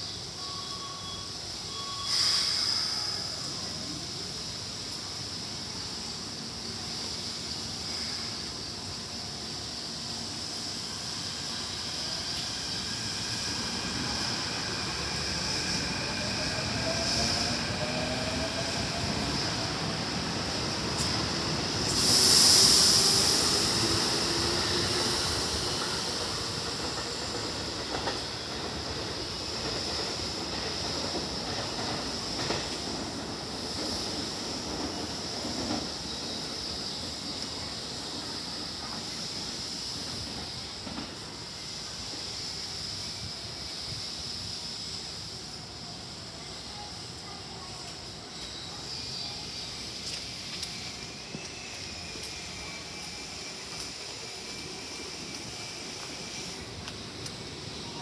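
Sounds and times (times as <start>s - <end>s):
loud sharp hiss: 0.1s - 58.0s
electric train motor whine: 50.0s - 58.0s.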